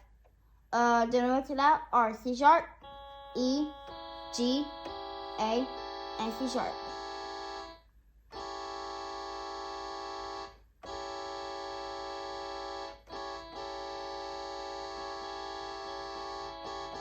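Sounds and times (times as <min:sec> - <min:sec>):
electronic keyboard horn chord: 0:02.8 - 0:17.0.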